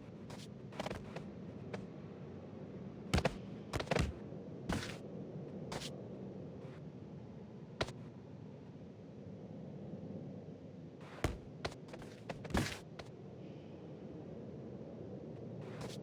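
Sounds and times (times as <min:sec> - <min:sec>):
low background hum: 0:00.0 - 0:16.0.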